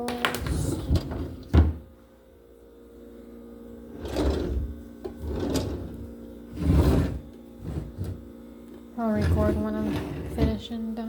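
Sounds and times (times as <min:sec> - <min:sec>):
steady low hum: 0:00.0 - 0:11.0
drawers sliding open and shut: 0:00.4 - 0:01.8, 0:03.9 - 0:08.2, 0:09.1 - 0:10.6.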